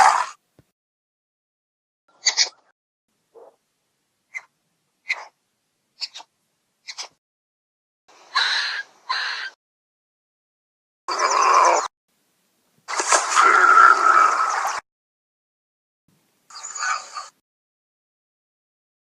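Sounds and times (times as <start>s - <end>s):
breathy hissing cartoon critter: 6.0s - 6.3s, 8.3s - 9.6s, 16.5s - 17.4s.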